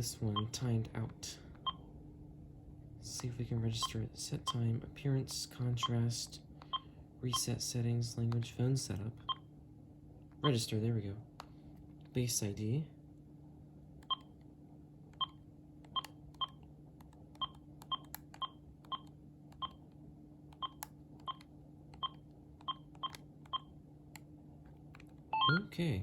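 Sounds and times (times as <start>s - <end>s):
phone keypad beeps: 14.1s - 14.3s, 20.6s - 21.4s, 22.0s - 23.7s, 25.3s - 25.7s
plain key clicks: 15.1s - 19.8s, 20.5s - 25.2s.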